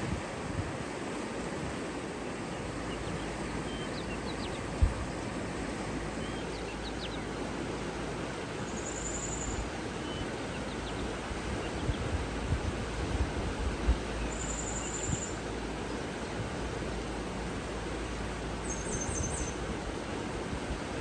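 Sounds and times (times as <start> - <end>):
steady rushing noise: 0.0 - 3.6, 9.3 - 21.0
faint bird chirps: 2.9 - 4.7, 8.6 - 11.1, 14.2 - 15.4, 18.6 - 19.6
high bird trill: 14.2 - 15.4.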